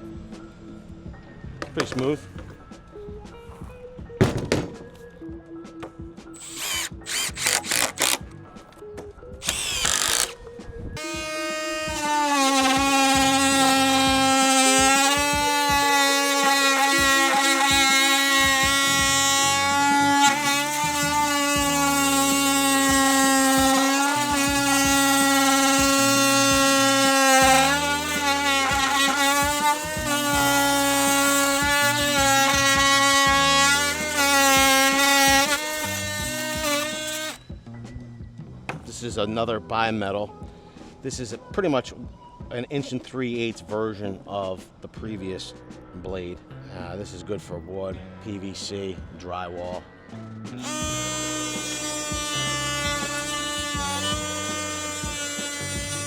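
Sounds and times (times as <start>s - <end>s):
oscillating multi-tool buzzing: 6.4s - 8.2s, 9.4s - 10.4s, 11.0s - 37.4s, 50.6s - 56.0s.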